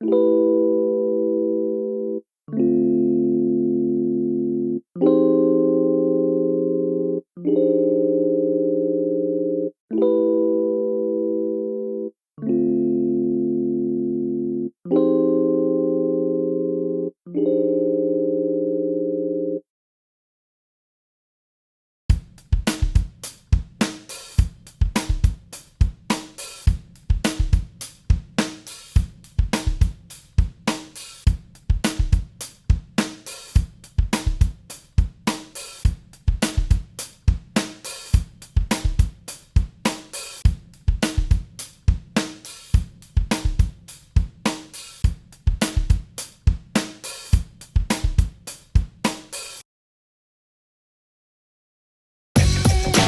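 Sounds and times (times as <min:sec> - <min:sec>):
drum kit playing a beat: 0:22.1 - 0:49.6, 0:52.4 - 0:53.0.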